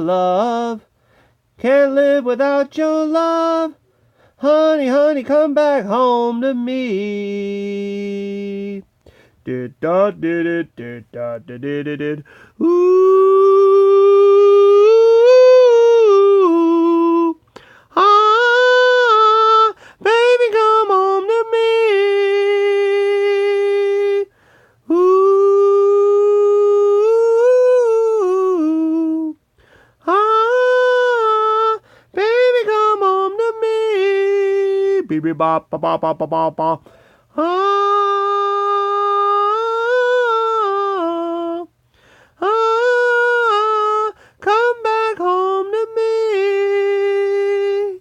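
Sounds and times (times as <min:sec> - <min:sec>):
woman singing unaccompanied: 0:09.4 - 0:24.3, 0:30.0 - 0:41.8, 0:42.4 - 0:48.0.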